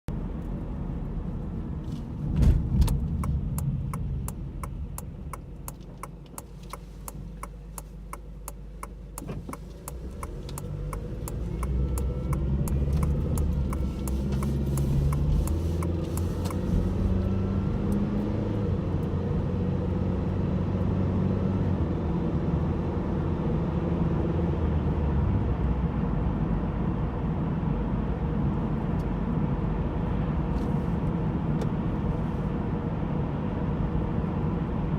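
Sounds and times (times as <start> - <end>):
car engine accelerating: 0.1 - 27.1
thump: 2.3 - 2.9
regular ticking: 2.9 - 16.6.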